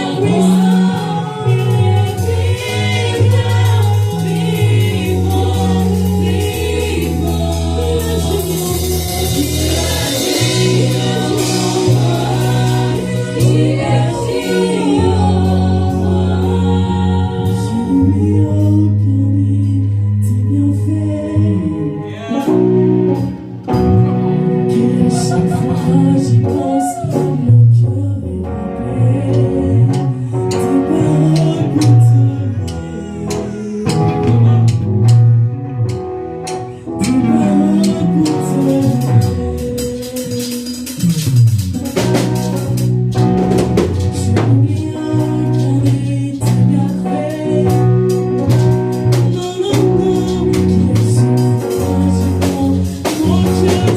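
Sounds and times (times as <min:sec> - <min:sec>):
drums: 0:00.0 - 0:19.0, 0:22.4 - 0:53.9
gospel worship music: 0:00.0 - 0:53.9
group of voices singing: 0:00.0 - 0:53.9
guitar: 0:00.0 - 0:53.9
low held instrumental chords: 0:00.0 - 0:53.9
steady bass line: 0:00.0 - 0:53.9
singing: 0:24.7 - 0:28.2.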